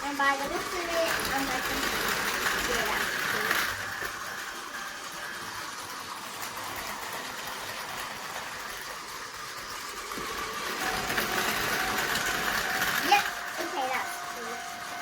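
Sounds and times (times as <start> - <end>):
toy trains whirring on plastic track: 0.0 - 15.0.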